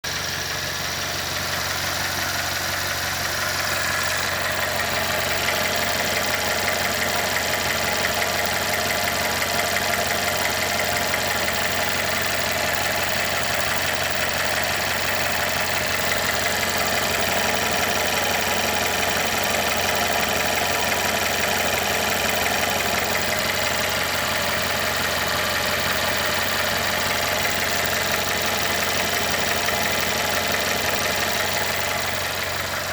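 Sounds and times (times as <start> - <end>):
car engine idling: 0.0 - 32.9
engine knocking: 0.0 - 32.9.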